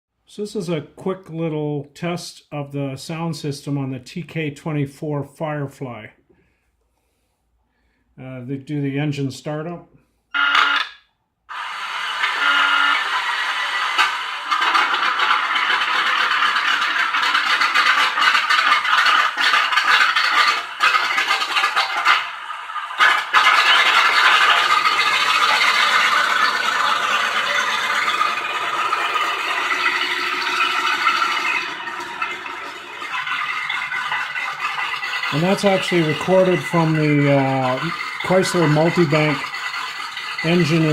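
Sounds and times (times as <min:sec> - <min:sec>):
tank engine through small speaker: 0:11.5 - 0:40.9.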